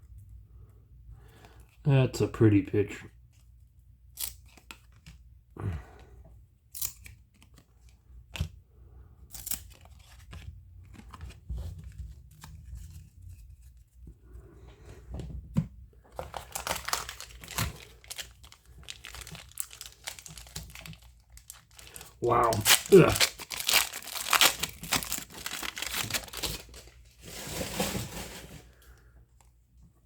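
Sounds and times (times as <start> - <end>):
trading cards handled and flipped: 4.1 - 5.3, 6.7 - 8.6, 9.3 - 14.2
card pack wrapper tearing and crinkling: 9.3 - 13.0, 16.2 - 27.0.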